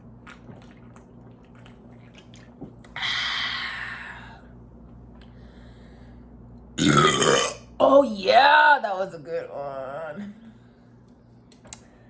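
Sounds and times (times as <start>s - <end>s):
wet chewing clicks: 0.2s - 3.0s.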